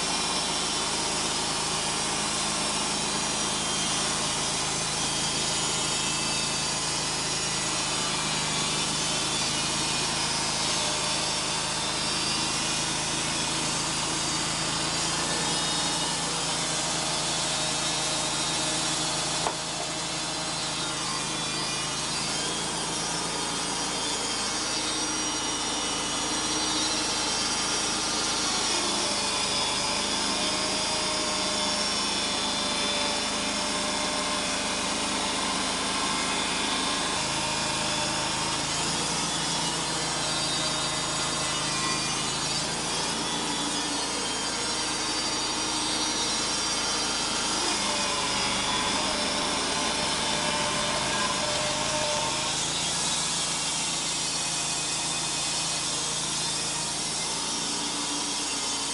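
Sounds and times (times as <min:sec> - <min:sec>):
band blade sawing through log: 0:00.0 - 0:58.9
sawmill engine running under load: 0:00.0 - 0:58.9.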